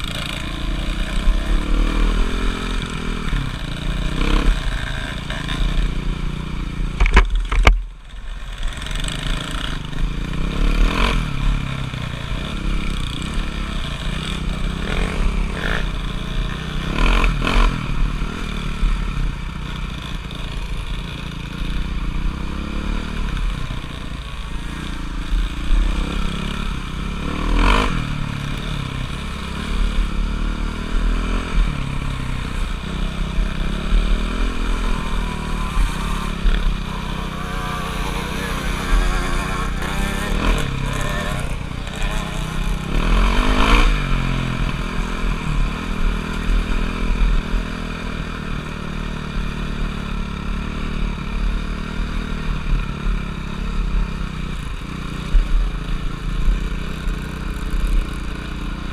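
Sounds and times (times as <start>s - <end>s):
motorcycle engine running: 0.0s - 58.9s
sharp knocks and clatter: 7.0s - 7.9s.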